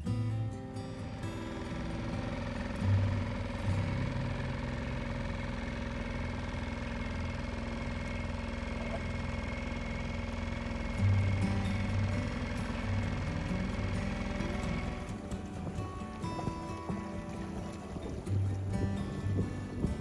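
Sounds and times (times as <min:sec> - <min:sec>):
outboard motor running: 0:00.0 - 0:20.0
low thumps: 0:11.1 - 0:20.0.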